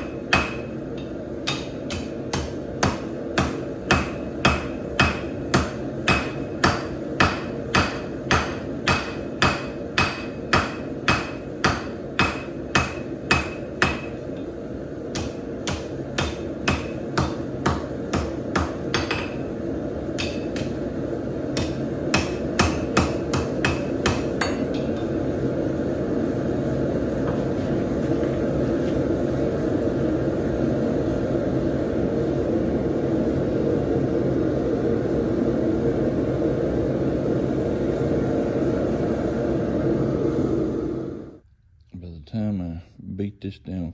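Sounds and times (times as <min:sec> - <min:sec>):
hammer blows on anvil: 0:00.0 - 0:14.4, 0:15.1 - 0:19.5, 0:20.2 - 0:20.8, 0:21.6 - 0:25.3
steady rushing roar: 0:00.0 - 0:41.4.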